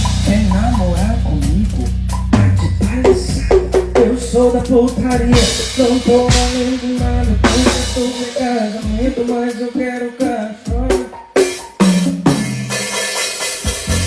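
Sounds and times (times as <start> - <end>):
bass: 0.0 - 11.2, 11.8 - 14.0
drum kit playing: 0.0 - 14.0.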